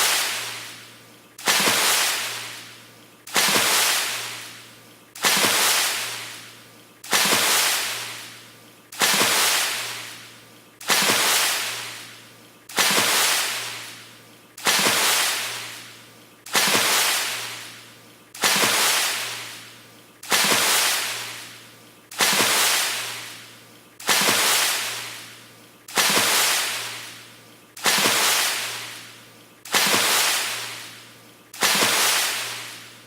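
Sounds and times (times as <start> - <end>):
fast water splash: 1.4 - 4.6, 5.2 - 6.5, 7.1 - 8.4, 9.0 - 12.1, 12.7 - 14.0, 14.6 - 15.9, 16.5 - 17.8, 18.4 - 27.2, 27.8 - 29.1, 29.7 - 31.0, 31.6 - 33.0.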